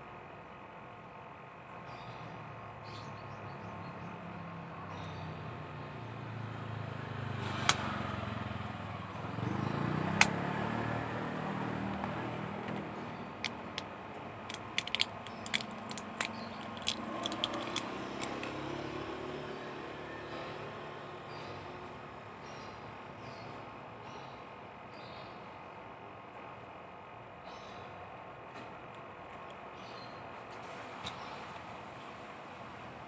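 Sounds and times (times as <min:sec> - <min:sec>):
vehicle passing: 0:05.6 - 0:22.0
sharp clicks and taps: 0:10.2 - 0:10.4, 0:11.9 - 0:18.6.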